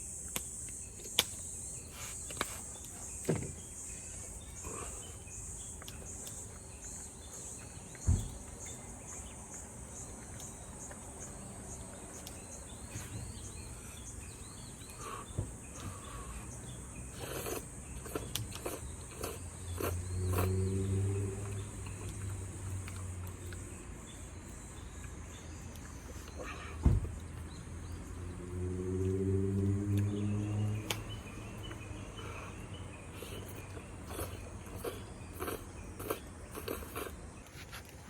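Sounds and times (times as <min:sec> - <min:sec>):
insects chirping: 0:00.0 - 0:38.0
dull knock: 0:26.8 - 0:27.1.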